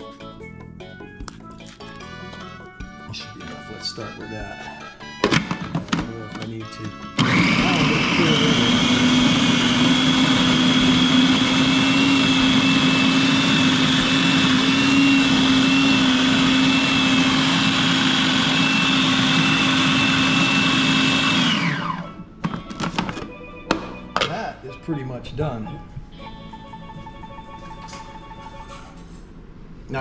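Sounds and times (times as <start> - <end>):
food processor motor running: 7.2 - 22.2.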